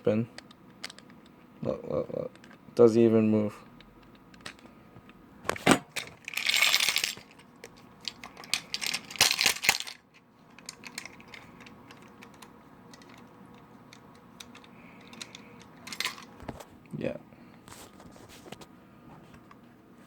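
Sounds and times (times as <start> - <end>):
lock box rattling: 6.0 - 13.3, 14.0 - 16.3
lock box clicking and clinking: 8.1 - 10.0.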